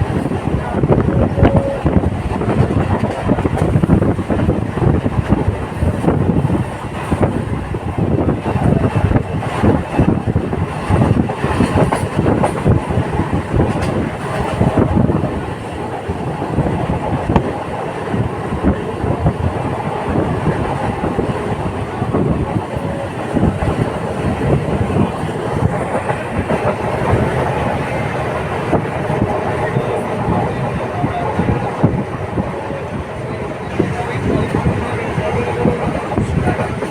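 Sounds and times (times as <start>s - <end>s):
train rumbling on track: 0.0s - 36.9s.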